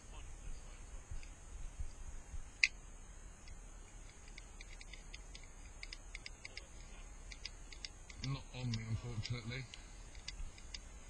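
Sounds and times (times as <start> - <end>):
airsoft gun clicks: 2.6 - 2.8, 3.4 - 10.9.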